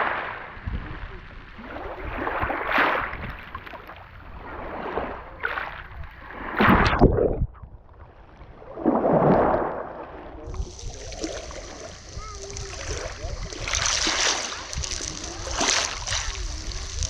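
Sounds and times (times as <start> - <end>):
waves breaking on shore: 0.0 - 7.1, 8.7 - 17.0.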